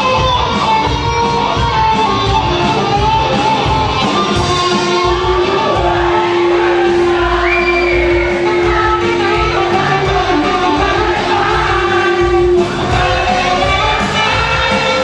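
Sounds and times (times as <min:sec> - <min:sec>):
live band playing: 0:00.0 - 0:15.0
person singing: 0:04.5 - 0:15.0.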